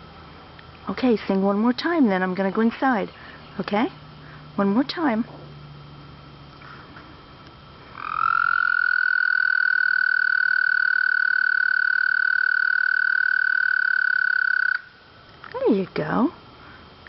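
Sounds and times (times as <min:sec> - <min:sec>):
frog trilling: 0:07.9 - 0:15.0.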